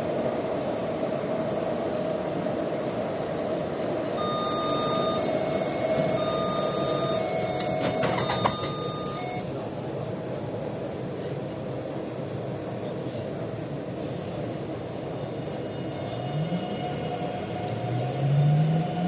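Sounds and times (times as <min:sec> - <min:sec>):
metro train rumbling: 0:00.0 - 0:19.0
electronic beeping chime: 0:04.2 - 0:09.5.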